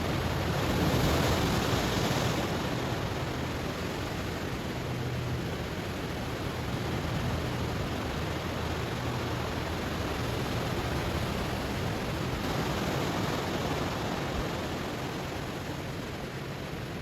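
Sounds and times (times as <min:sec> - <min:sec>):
ocean waves washing over stones: 0:00.0 - 0:17.0.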